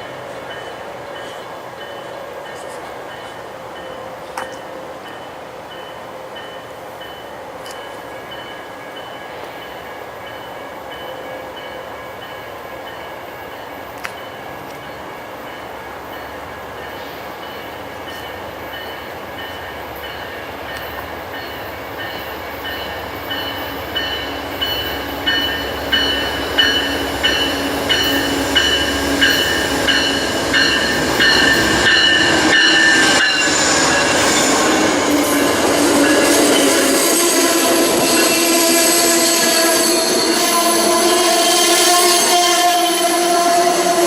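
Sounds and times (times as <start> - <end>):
train passing: 0.0 - 44.0
high squeal of wheels on rail: 14.0 - 44.0.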